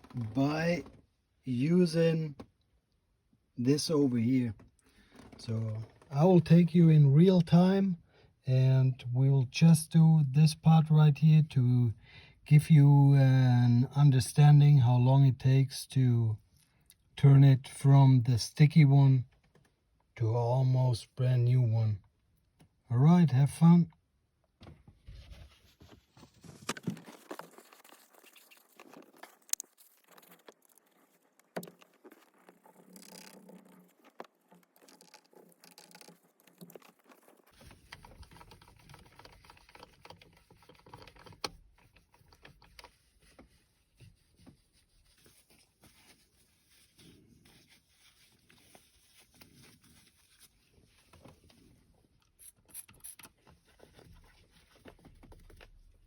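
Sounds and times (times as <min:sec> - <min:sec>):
small irregular clicks: 0:19.3 - 0:20.1, 0:26.6 - 0:43.6
rubbing and scraping on plastic: 0:24.6 - 0:56.0.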